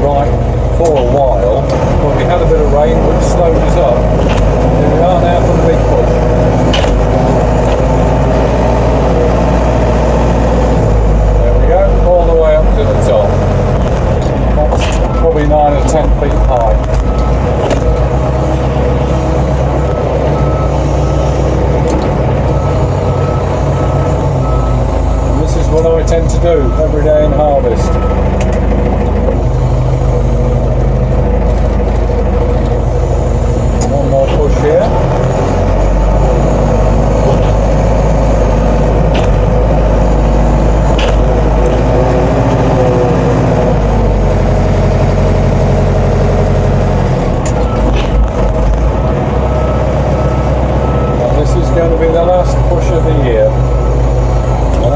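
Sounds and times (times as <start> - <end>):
diesel engine running under load: 0.0 - 54.9
reversing alarm beeps: 5.0 - 8.2, 15.0 - 15.6, 17.0 - 21.6, 22.4 - 28.3, 29.4 - 30.7, 32.8 - 39.0, 39.9 - 41.3, 49.0 - 54.9.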